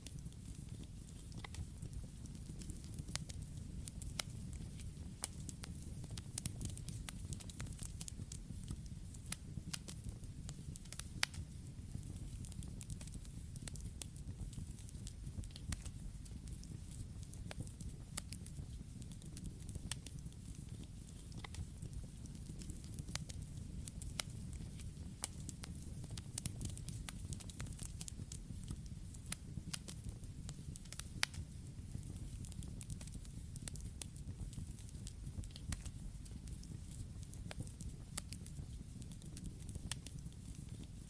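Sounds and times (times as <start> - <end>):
wood crackling and popping: 0.0 - 41.0
campfire flame rumble: 0.1 - 41.0.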